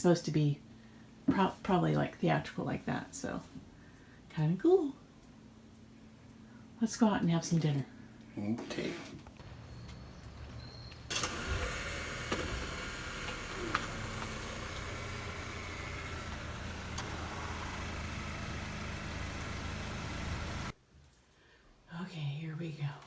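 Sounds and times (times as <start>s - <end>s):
car engine running: 9.4s - 20.8s
road noise: 9.4s - 20.8s.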